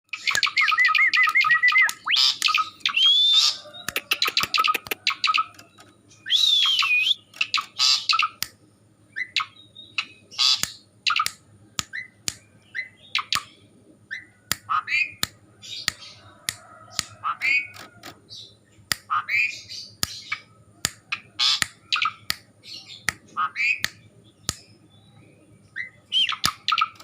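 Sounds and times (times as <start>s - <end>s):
sharp clicks: 0.1s - 3.0s, 3.8s - 6.0s, 10.6s - 12.5s, 20.0s - 24.7s
starling calling: 0.1s - 8.5s, 9.1s - 27.0s.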